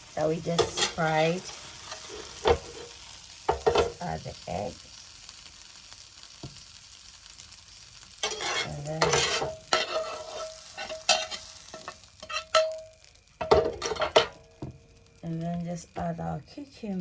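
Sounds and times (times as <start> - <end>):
food sizzling in a frying pan: 0.0 - 17.0
utensil scraping and clattering in pan: 0.2 - 4.1, 8.1 - 14.5.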